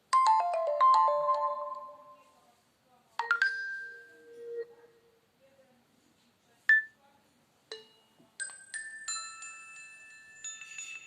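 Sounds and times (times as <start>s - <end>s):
phone alert tone: 0.2s - 2.2s, 3.2s - 4.7s
bell-like pings: 7.7s - 11.0s.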